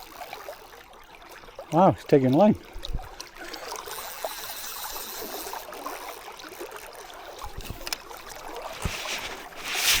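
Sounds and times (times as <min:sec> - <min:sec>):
river water running: 0:00.0 - 0:10.0
faint small clicks: 0:07.4 - 0:08.1.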